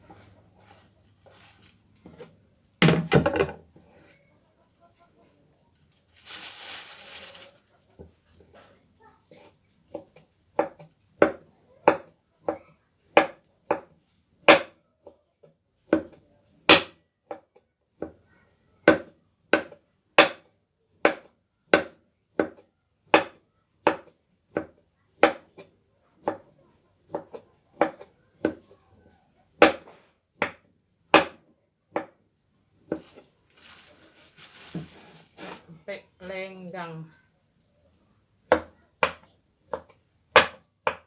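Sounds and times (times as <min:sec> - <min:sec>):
knife chopping food: 0:38.5 - 0:41.0.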